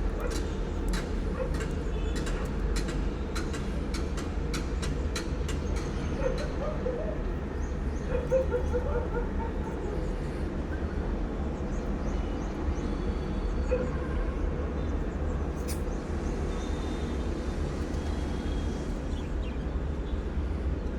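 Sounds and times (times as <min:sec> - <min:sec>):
sharp click: 0:15.6 - 0:15.8.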